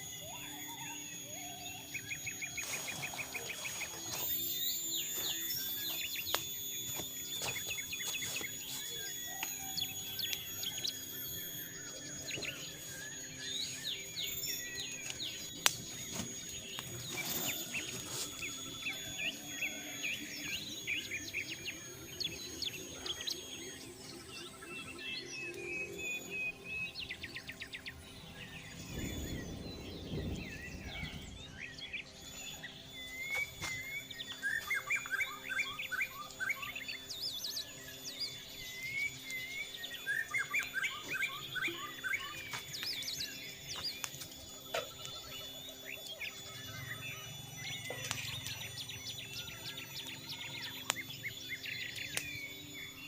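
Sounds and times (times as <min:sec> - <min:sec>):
forest birds chirping: 0:00.0 - 0:53.0
high-pitched whine: 0:00.0 - 0:53.0.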